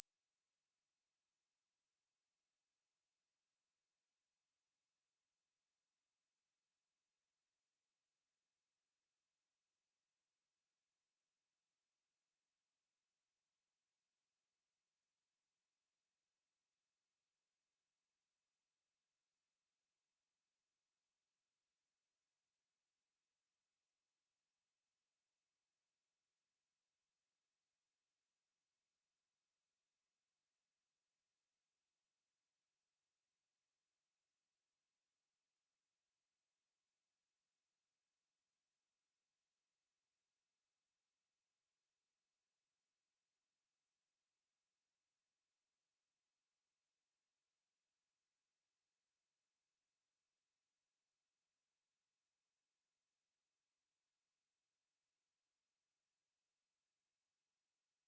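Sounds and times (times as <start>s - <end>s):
high-pitched sine test tone: 0.0s - 2.1s.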